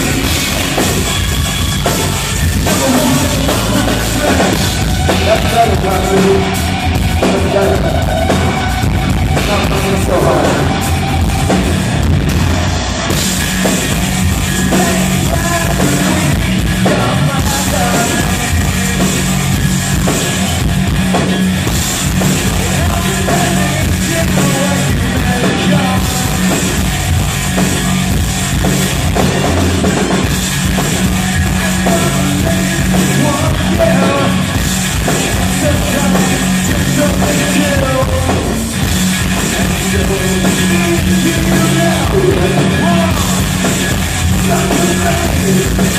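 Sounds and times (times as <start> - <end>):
drum kit: 0.0 - 45.9
heavy electric guitars: 0.0 - 45.9
person singing: 2.6 - 11.7, 14.4 - 19.4, 22.4 - 26.9, 31.2 - 38.8, 39.4 - 43.7, 44.3 - 45.9.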